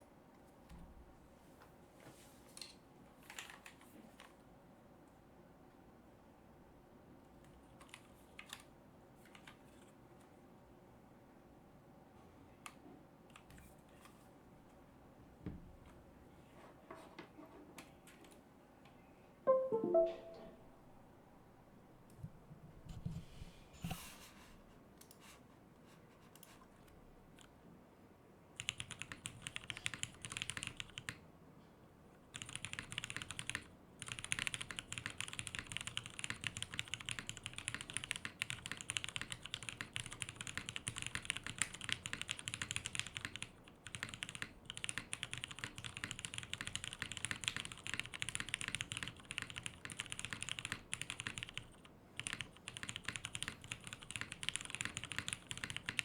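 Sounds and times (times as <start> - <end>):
mechanical keyboard typing: 28.6 - 31.2, 32.3 - 56.0.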